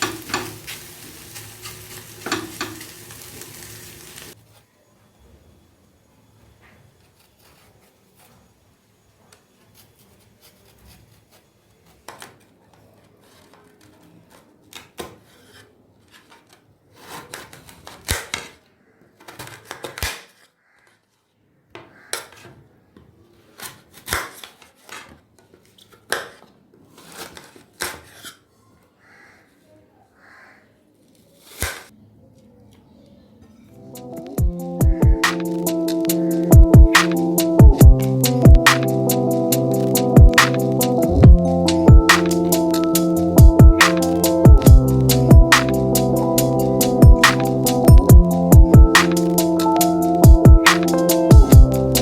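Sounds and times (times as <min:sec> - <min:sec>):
dishes and utensils clinking: 0:00.0 - 0:03.2.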